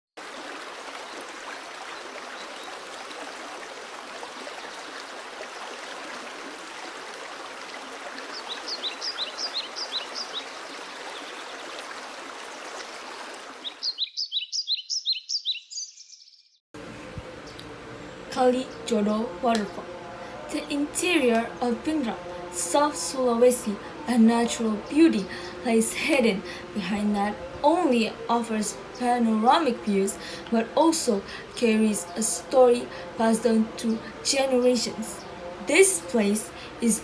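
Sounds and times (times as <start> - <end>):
stream water rushing: 0.2 - 13.9, 16.8 - 37.0
bird chirping: 8.3 - 10.6, 13.6 - 16.6.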